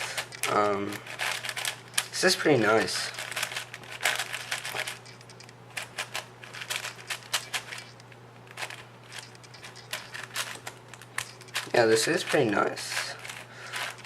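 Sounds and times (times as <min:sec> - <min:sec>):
speed cube plastic clicks: 0:03.2 - 0:12.4.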